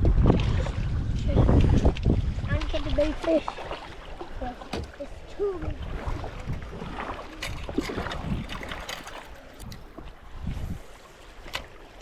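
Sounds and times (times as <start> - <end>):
wind on microphone: 0.0 - 11.1
bumps against kayak hull: 4.6 - 5.0.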